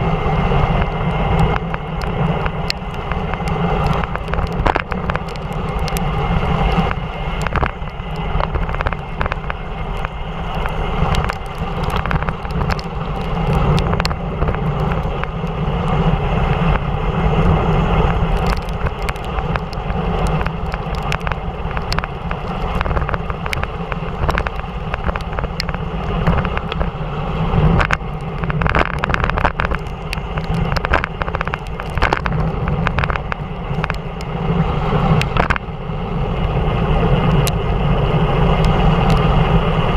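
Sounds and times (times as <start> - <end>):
rushing wind: 0.0 - 39.9.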